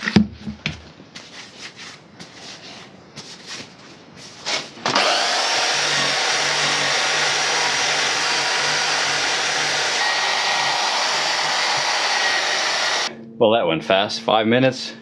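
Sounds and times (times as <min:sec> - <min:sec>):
wire wheel scrubbing steel: 0:05.0 - 0:13.1.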